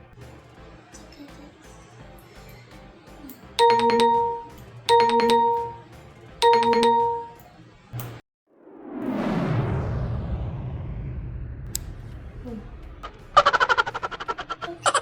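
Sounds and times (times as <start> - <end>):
electronic chime jingle: 3.6 - 7.4.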